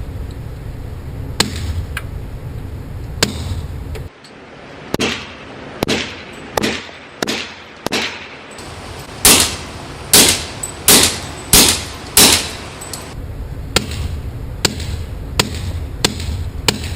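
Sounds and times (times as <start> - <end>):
suppressed pistol shots: 9.2 - 13.0.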